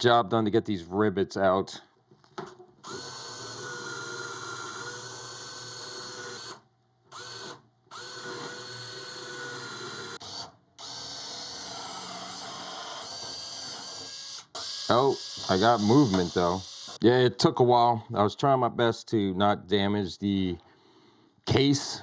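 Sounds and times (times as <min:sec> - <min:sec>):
hand drill whining through metal: 0:02.8 - 0:17.0.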